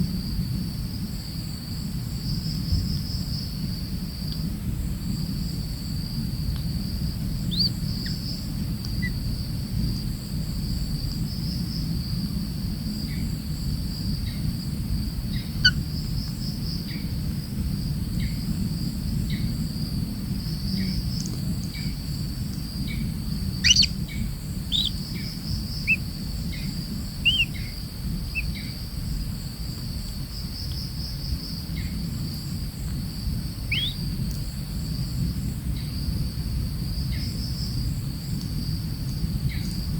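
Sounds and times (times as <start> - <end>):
insects shrilling: 7.4 - 9.2, 21.8 - 28.7, 33.6 - 34.2
bird chirps and calls: 7.5 - 8.2, 23.6 - 27.7, 33.7 - 34.0.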